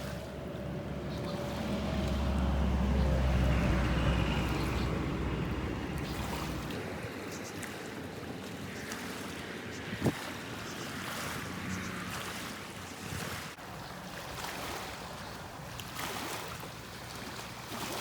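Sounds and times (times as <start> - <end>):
wind rumbling on microphone: 0.0 - 13.7
water washing against rocks: 1.2 - 18.0.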